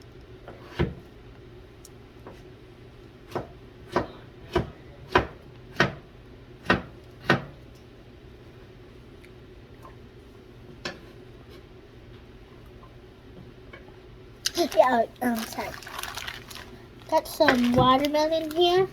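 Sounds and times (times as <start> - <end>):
knife chopping on cutting board: 3.3 - 6.0, 6.6 - 7.5.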